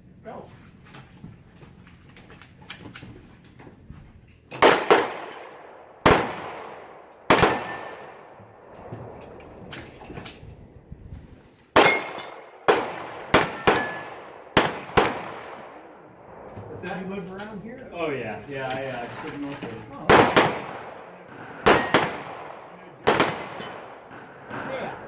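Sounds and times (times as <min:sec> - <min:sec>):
pistol shots with echo: 0:04.6 - 0:08.7, 0:11.8 - 0:16.4, 0:20.0 - 0:24.6.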